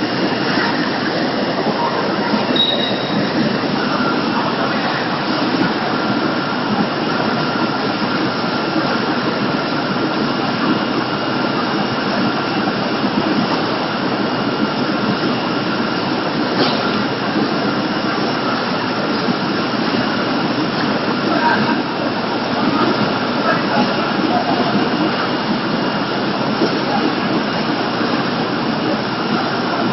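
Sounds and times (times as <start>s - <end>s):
processing machinery running: 0.0s - 29.9s.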